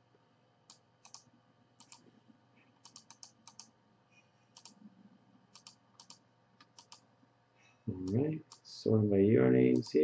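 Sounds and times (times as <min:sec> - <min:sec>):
typing on computer keyboard: 0:00.7 - 0:02.0, 0:02.8 - 0:03.7, 0:04.6 - 0:04.8, 0:05.6 - 0:07.0.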